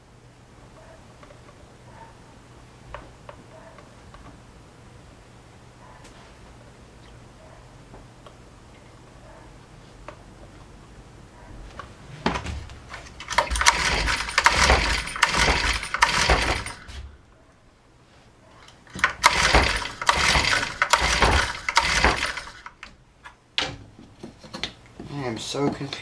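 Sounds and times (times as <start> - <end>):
engine cranking: 13.0 - 16.9, 18.9 - 22.9
recoil starter pulls: 13.0 - 17.0, 18.9 - 22.9.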